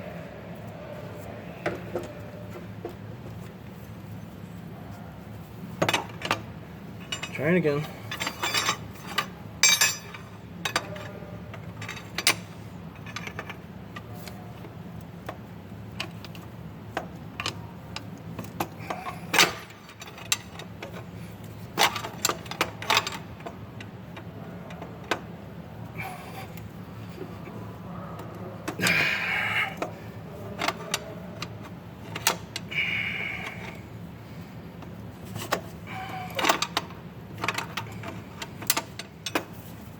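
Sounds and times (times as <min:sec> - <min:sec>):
low steady hum: 0:00.0 - 0:39.9
metal tools tapping on metal: 0:08.1 - 0:11.0.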